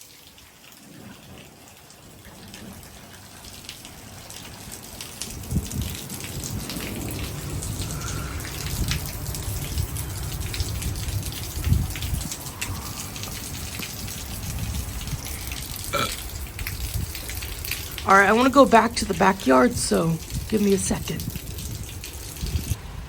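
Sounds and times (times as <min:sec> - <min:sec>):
heavy rain falling: 0:00.0 - 0:23.0
wind gusting against microphone: 0:02.2 - 0:23.0.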